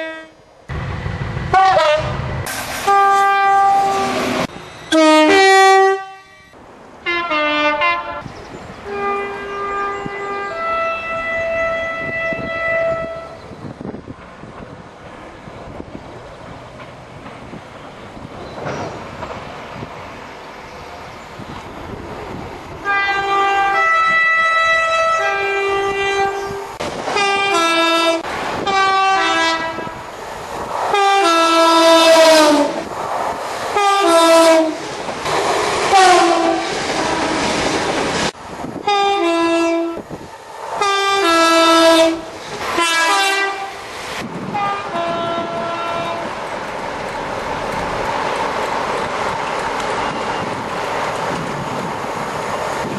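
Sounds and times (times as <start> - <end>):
two-tone train horn: 0.0 - 0.4, 1.5 - 2.2, 2.8 - 13.5, 22.8 - 30.1, 30.9 - 32.8, 33.8 - 34.8, 35.9 - 37.4, 38.8 - 40.0, 40.8 - 43.8, 44.5 - 46.3
train running on rails: 0.0 - 52.9.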